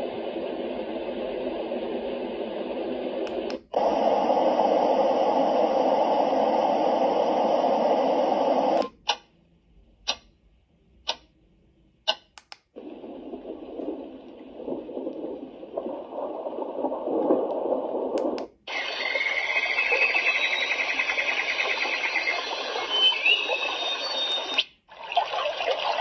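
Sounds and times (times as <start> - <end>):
white noise machine: 0.0 - 9.2, 12.8 - 24.6.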